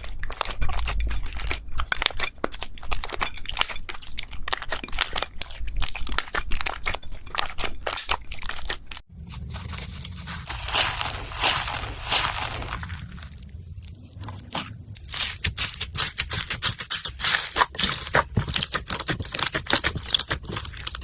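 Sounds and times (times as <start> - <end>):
slime squishing crackle: 0.0 - 21.0
slime crackling and popping: 0.2 - 14.0
low hum: 9.1 - 15.8.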